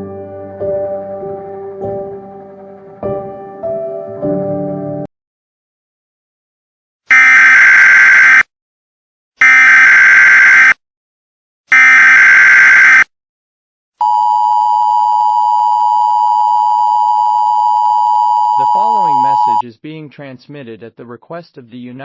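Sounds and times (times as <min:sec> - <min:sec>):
two-tone attention signal: 0:16.4 - 0:19.6.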